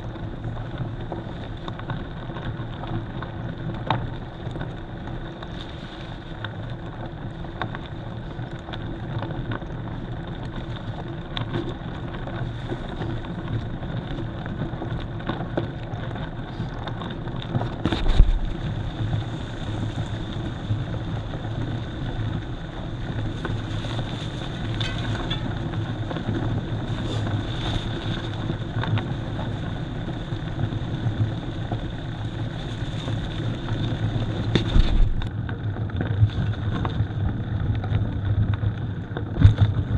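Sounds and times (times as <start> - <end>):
bike tyres rolling rumble: 0.0 - 39.9
bike rattles and knocks: 6.9 - 39.9
wind on microphone: 10.4 - 39.9.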